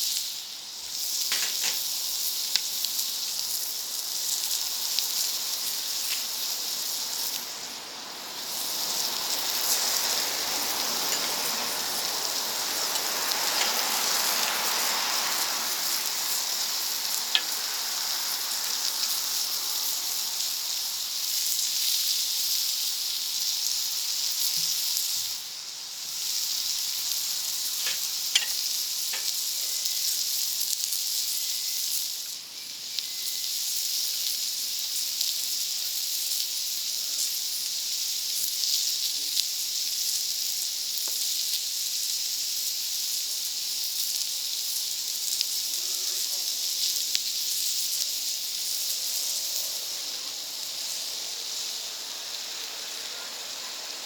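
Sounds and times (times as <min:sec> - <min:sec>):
food sizzling: 0:00.0 - 0:54.0
sharp pops: 0:27.8 - 0:29.4.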